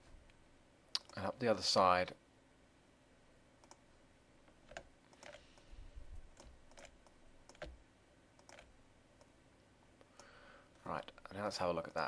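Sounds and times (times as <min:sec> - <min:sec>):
mouse and keyboard clicks: 0:04.7 - 0:05.7, 0:06.3 - 0:07.8, 0:08.4 - 0:09.3.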